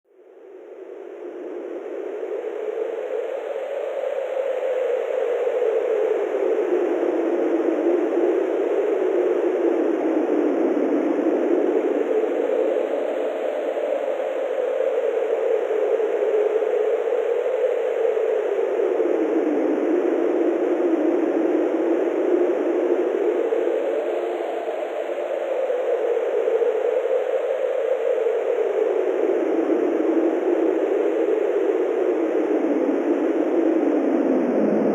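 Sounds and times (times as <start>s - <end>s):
wind rushing: 33.6s - 34.9s.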